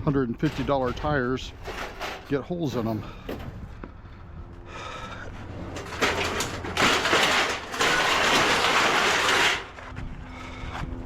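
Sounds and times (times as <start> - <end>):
faint low engine hum: 0.0 - 7.9, 9.6 - 11.0
tires crunching over debris: 4.7 - 10.9.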